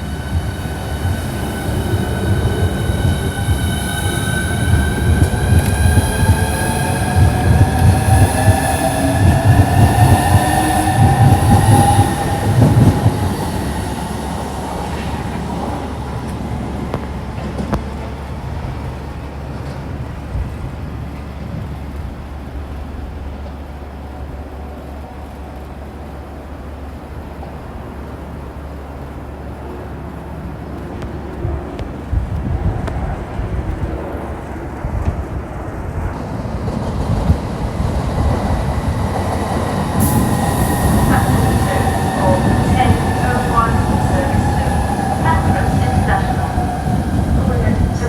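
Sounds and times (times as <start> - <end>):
train motor whine: 0.0 - 17.8, 37.0 - 48.0
train wheel rumble and knocks: 0.0 - 22.4, 31.0 - 48.0.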